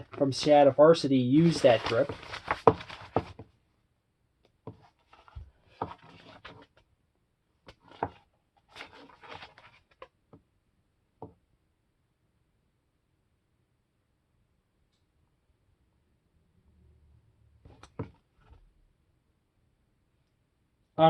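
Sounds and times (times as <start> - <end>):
book pages turning: 0.0 - 3.5, 4.7 - 6.8, 7.7 - 10.1.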